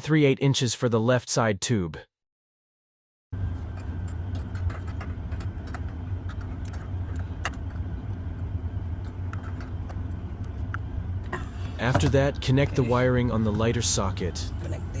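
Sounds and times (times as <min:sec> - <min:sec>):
steady low rumble: 0:03.4 - 0:15.0.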